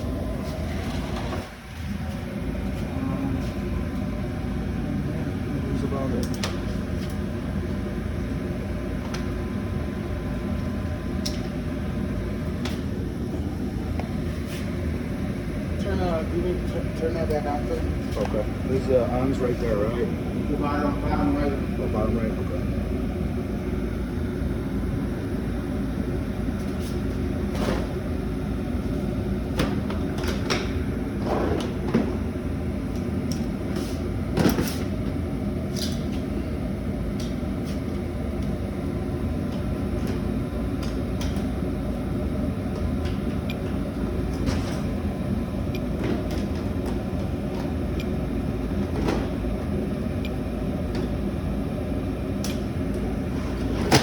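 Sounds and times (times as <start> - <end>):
furnace humming: 0.0 - 54.0.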